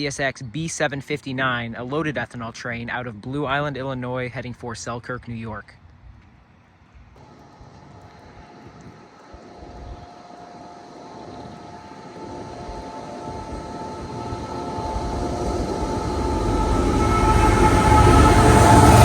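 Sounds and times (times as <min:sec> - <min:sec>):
freight train rumble: 0:07.2 - 0:19.0
faint high tones: 0:08.3 - 0:19.0.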